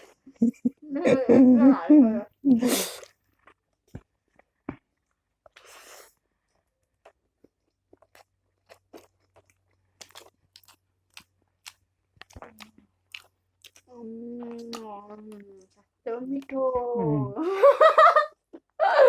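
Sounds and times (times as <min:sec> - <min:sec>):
chewing with crunches: 0:02.9 - 0:16.6.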